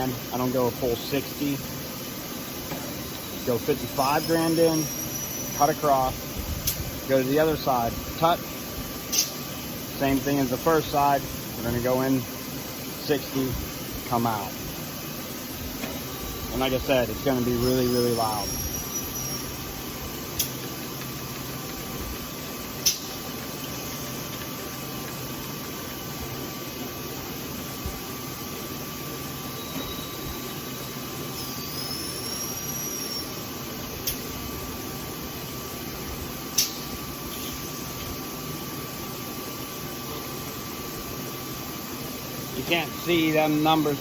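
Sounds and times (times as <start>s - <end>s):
milling machine running: 0.0s - 44.0s
brief high squeal: 4.2s - 5.7s, 17.9s - 19.6s.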